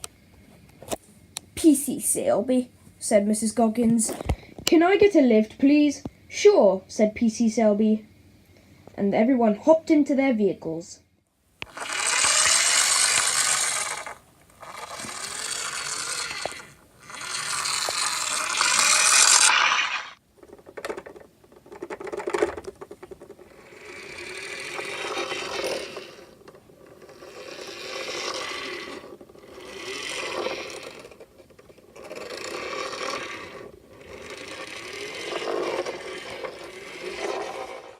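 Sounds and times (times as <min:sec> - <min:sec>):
toy vehicle wheels scraping and rattling: 0:11.6 - 0:37.9.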